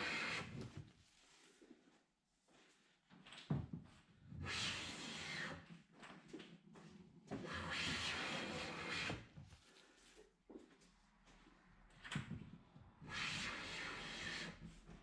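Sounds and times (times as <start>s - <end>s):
hand plane smoothing wood: 0.0s - 0.7s, 7.4s - 9.3s, 13.1s - 14.6s.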